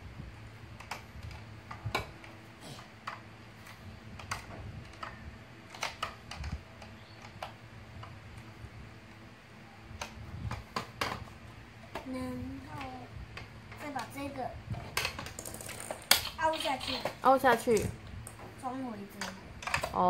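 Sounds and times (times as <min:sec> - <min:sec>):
plastic toy parts clicking: 0:05.7 - 0:07.6, 0:19.2 - 0:20.0.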